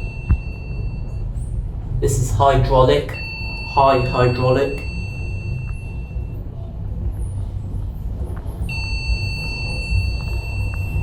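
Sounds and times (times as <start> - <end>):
lift machinery rumble: 0.0 - 11.0
high electronic tone: 3.0 - 6.7.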